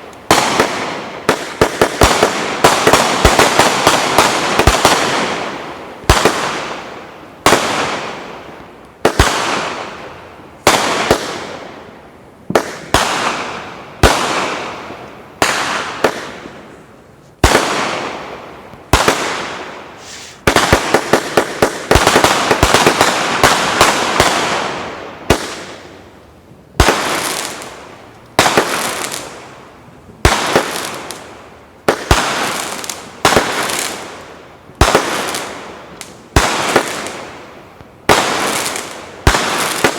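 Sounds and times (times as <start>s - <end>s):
fast barrage of fireworks: 0.0s - 26.1s, 26.7s - 39.9s
fireworks shots with crackly tails: 0.0s - 39.9s.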